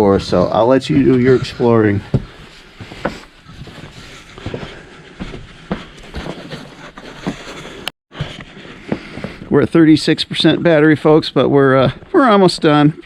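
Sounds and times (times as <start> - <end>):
footsteps crunching in snow: 2.2 - 9.4.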